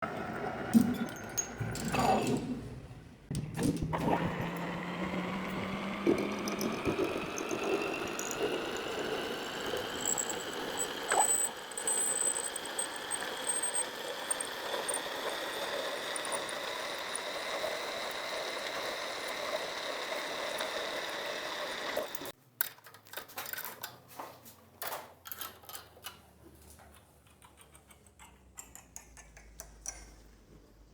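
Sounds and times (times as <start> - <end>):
machine whine rising in pitch: 4.0 - 22.3.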